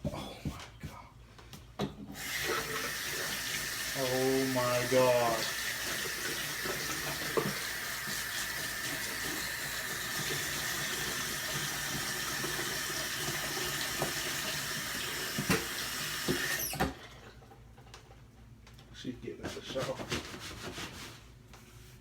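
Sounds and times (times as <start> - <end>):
water running: 2.2 - 17.4.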